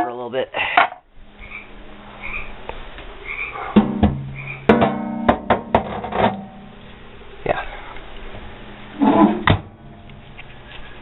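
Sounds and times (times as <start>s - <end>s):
microwave oven knocks: 3.8s - 6.6s
short hollow ringing: 3.8s - 6.8s.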